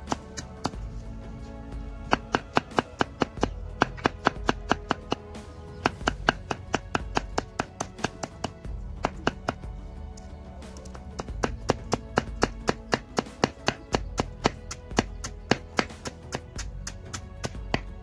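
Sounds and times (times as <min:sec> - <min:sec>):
background music: 0:00.0 - 0:18.0
knife chopping banana stem: 0:02.1 - 0:05.2, 0:11.1 - 0:17.9.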